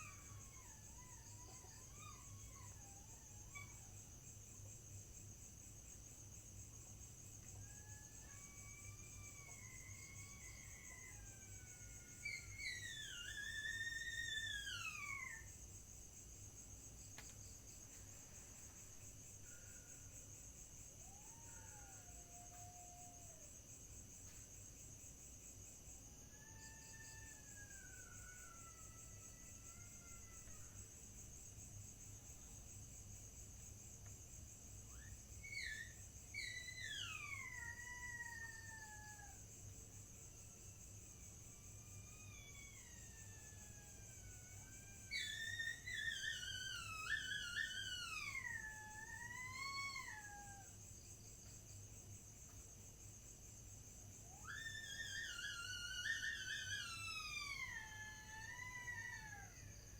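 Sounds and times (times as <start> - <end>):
crickets chirring: 0.0 - 59.9
long gliding whistled call: 54.4 - 58.7.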